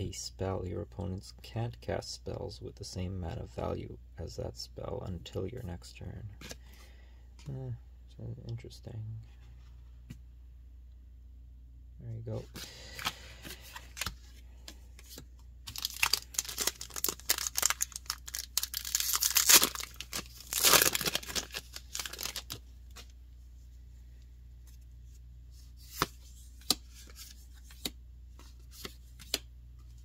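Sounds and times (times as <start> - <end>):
foil wrapper crinkling and tearing: 15.7 - 22.6.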